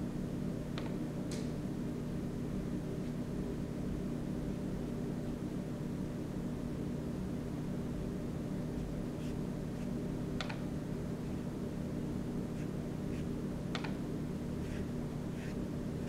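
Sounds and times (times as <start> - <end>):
paintbrush swishing on paper: 8.8 - 10.0, 12.5 - 13.4, 14.6 - 15.6.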